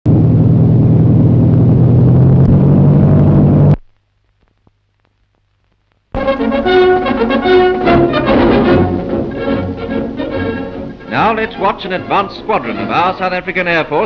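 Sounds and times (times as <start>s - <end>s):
propeller aircraft engines droning: 0.1s - 3.8s, 6.2s - 14.0s
brass music: 6.2s - 13.9s.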